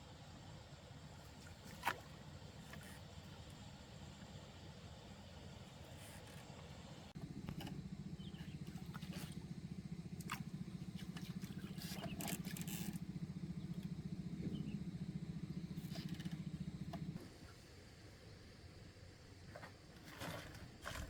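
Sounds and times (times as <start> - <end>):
small engine puttering: 7.2 - 17.4.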